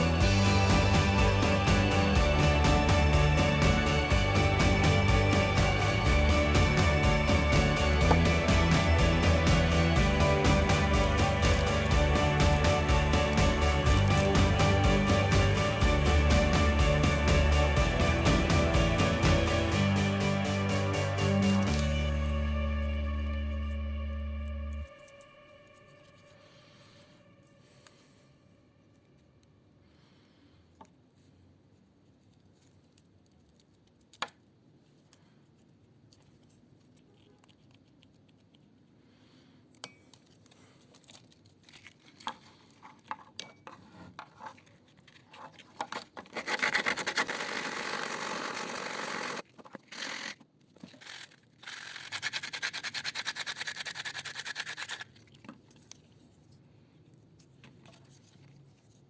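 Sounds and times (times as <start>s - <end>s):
steady scraping: 0.0s - 28.1s.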